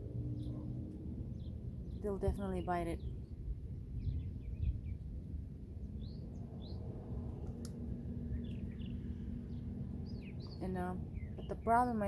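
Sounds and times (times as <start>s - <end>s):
birds chirping: 0.0s - 12.0s
low background rumble: 0.0s - 12.0s.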